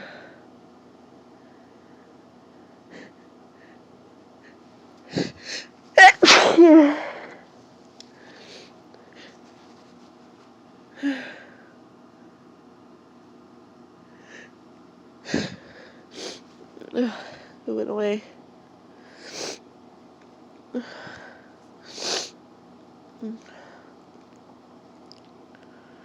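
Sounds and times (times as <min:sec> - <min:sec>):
person sneezing: 0:06.0 - 0:07.4
person breathing: 0:08.2 - 0:09.4, 0:20.8 - 0:22.3.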